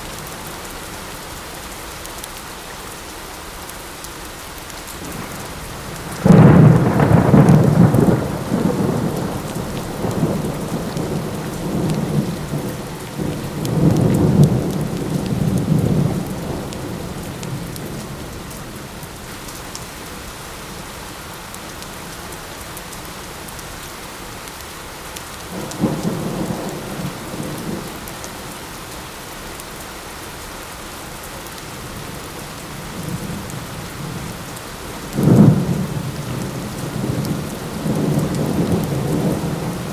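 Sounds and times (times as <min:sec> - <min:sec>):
light rain: 0:00.0 - 0:39.9
thunder rumbling: 0:05.1 - 0:18.3, 0:35.1 - 0:39.9.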